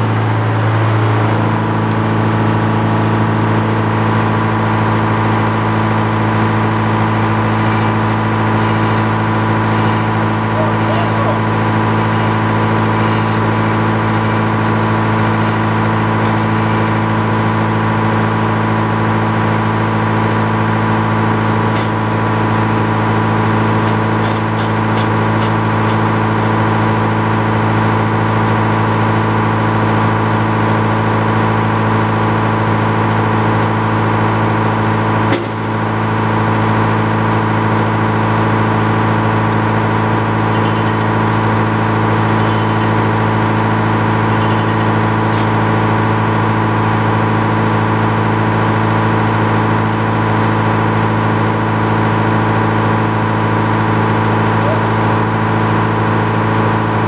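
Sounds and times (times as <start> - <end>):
motor humming: 1.6 - 28.7, 34.0 - 51.1.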